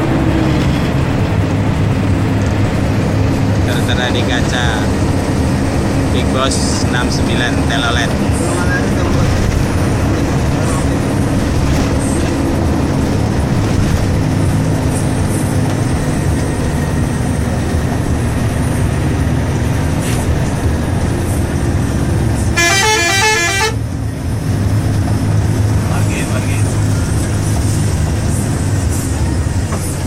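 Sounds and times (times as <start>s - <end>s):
vehicle engine and road rumble: 0.0s - 30.0s
multi-tone bus horn: 21.9s - 24.2s.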